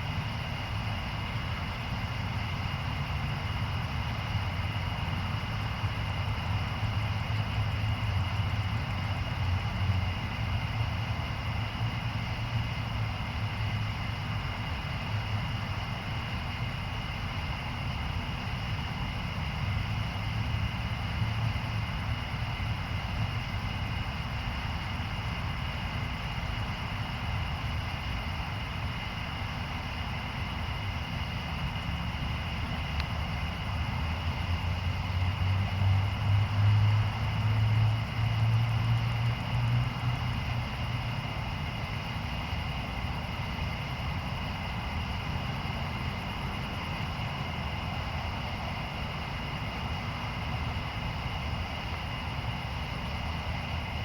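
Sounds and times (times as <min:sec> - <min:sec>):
low outdoor rumble: 0:00.0 - 0:54.0
constant high-pitched tones: 0:36.8 - 0:54.0.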